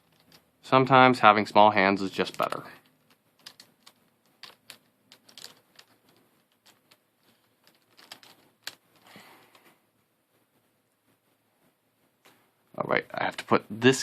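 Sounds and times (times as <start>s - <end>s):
plastic puzzle pieces clicking: 0.0s - 0.4s, 2.2s - 9.7s.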